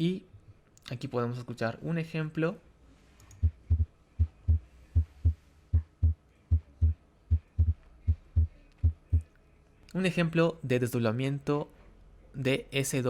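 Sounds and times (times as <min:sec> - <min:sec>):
heartbeat lub-dub: 0:03.4 - 0:09.3.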